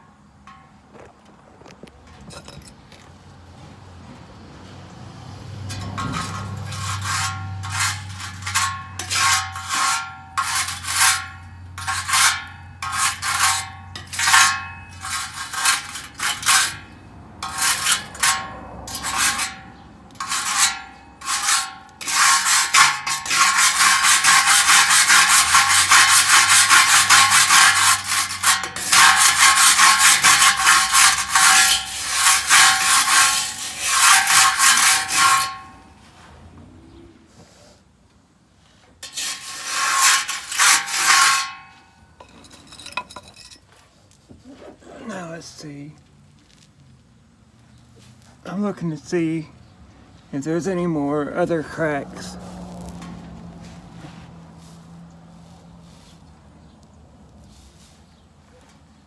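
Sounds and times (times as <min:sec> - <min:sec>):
wire brush scrubbing rusty metal: 0:05.5 - 0:36.2, 0:39.0 - 0:43.6, 0:50.4 - 0:56.4.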